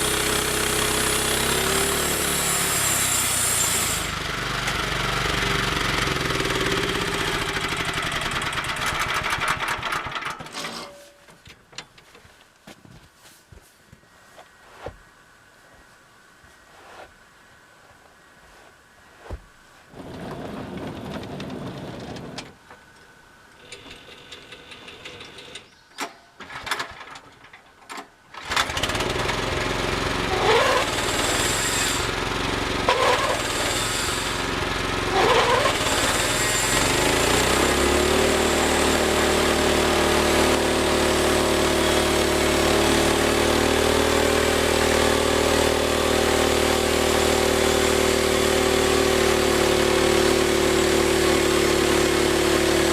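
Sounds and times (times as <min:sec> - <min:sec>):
small engine revving and running: 0:00.0 - 0:10.1, 0:28.4 - 0:52.9.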